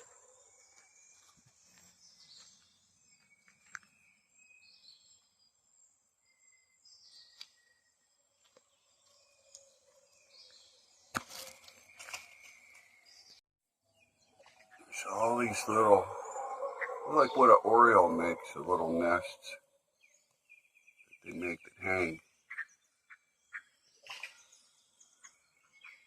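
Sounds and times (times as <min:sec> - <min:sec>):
insect background: 0:00.0 - 0:13.3, 0:13.9 - 0:26.0
distant bird chirps and whistles: 0:08.7 - 0:26.0.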